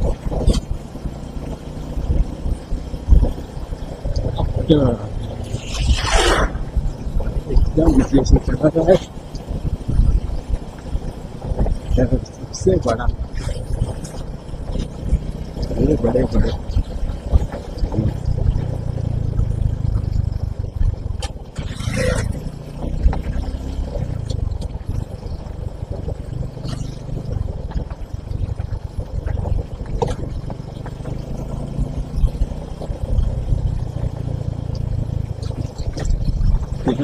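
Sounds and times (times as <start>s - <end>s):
motorcycle engine hum: 0.0s - 37.0s
wind rumble on microphone: 0.0s - 37.0s
short rush of noise: 5.2s - 7.0s.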